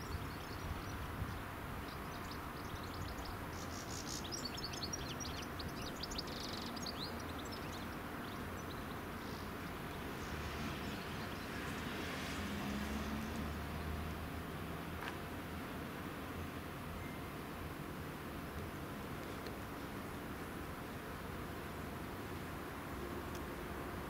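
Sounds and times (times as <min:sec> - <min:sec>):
small birds chirping: 0:00.0 - 0:14.0
low background noise: 0:00.0 - 0:24.0.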